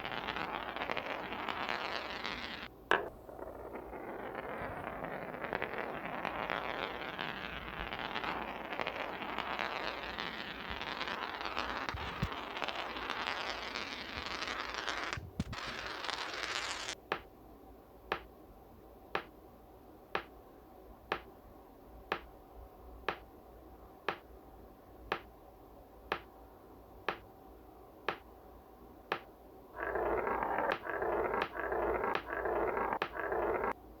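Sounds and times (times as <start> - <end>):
marbles rolling on a track: 0.0 - 17.0, 29.8 - 33.8.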